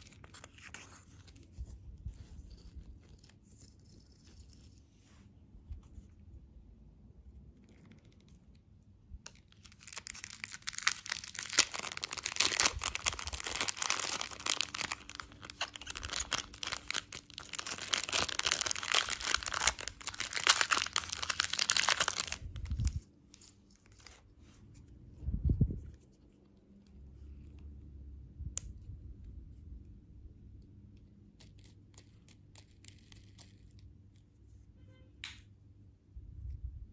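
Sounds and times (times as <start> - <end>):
candy wrapper crinkling: 9.3 - 24.2, 31.3 - 33.9.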